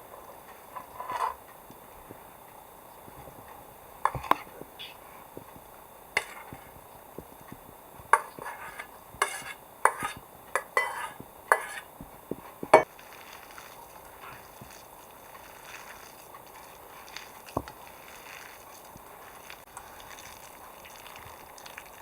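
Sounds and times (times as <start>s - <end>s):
utensils clinking against pots: 4.1s - 4.5s, 8.1s - 11.9s.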